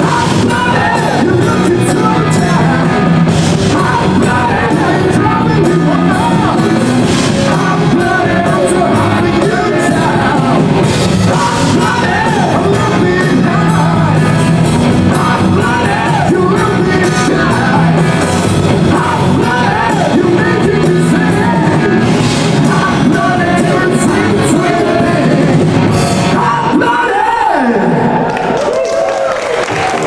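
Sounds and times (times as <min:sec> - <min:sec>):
man singing: 0:00.0 - 0:28.1
distorted electric guitars: 0:00.0 - 0:28.2
drums: 0:00.0 - 0:30.0.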